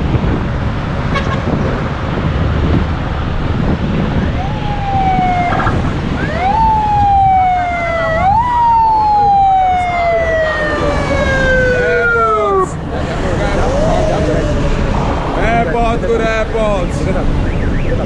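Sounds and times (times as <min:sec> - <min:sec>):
road traffic rumble: 0:00.0 - 0:18.0
wind: 0:00.0 - 0:18.0
siren rising and sliding down: 0:04.3 - 0:12.8, 0:13.6 - 0:16.6.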